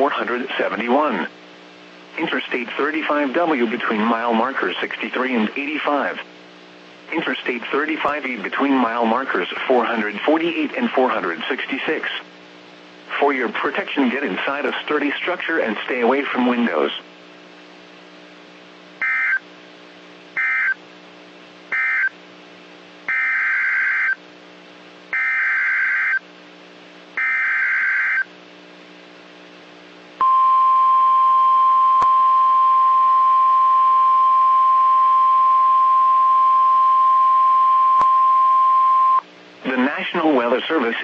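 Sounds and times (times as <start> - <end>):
steady warning alarm tone: 19.0 - 19.4, 20.4 - 20.8, 21.7 - 22.1, 23.1 - 24.2, 25.2 - 26.2, 27.2 - 28.3.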